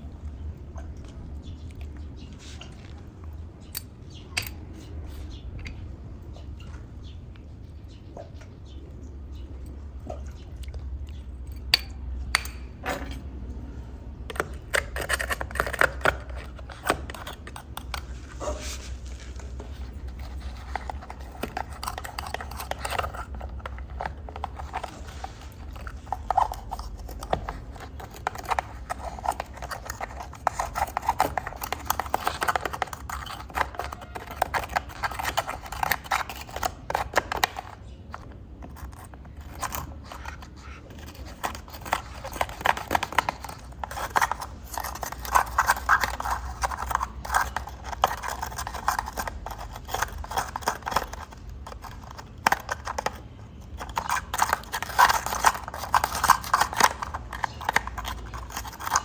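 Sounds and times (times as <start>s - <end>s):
scratchy rubbing and scraping: 14.2s - 59.0s.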